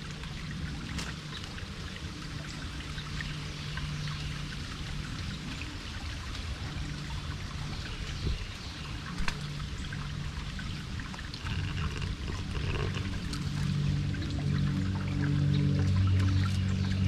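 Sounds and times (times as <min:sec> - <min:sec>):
small splashing ticks: 0:00.0 - 0:04.2, 0:08.0 - 0:17.0
soft low music tones: 0:00.0 - 0:17.0
water trickling and flowing: 0:00.0 - 0:17.0.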